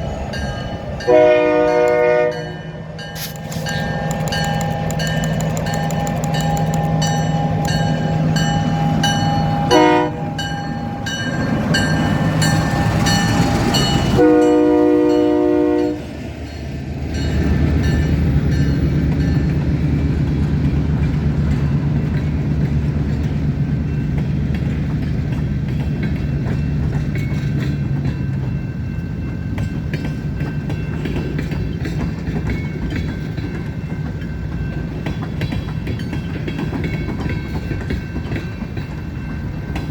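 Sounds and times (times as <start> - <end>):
train horn blast: 1.0 - 3.3, 7.4 - 11.2, 14.0 - 16.2
locomotive diesel engine drone: 2.7 - 14.2
bell ringing rapidly: 3.2 - 9.2
freight cars clickety-clack: 3.2 - 15.5, 16.2 - 39.9.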